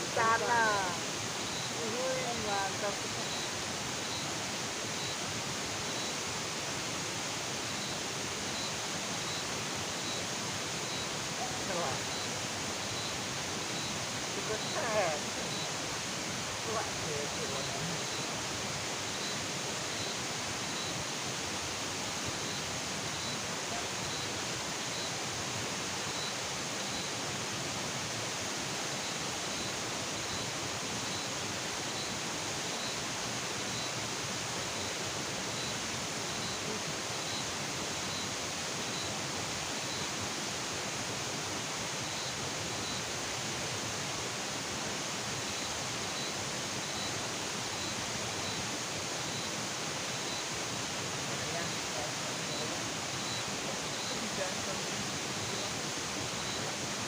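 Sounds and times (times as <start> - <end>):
faint high chirp: 0.0 - 4.3, 4.9 - 6.2, 7.7 - 15.8, 16.7 - 18.4, 19.1 - 21.0, 22.0 - 25.2, 26.1 - 27.2, 29.0 - 33.0, 33.6 - 34.0, 34.6 - 39.2, 42.0 - 43.1, 52.4 - 54.4, 55.3 - 56.7
outdoor night background hiss: 0.0 - 57.0.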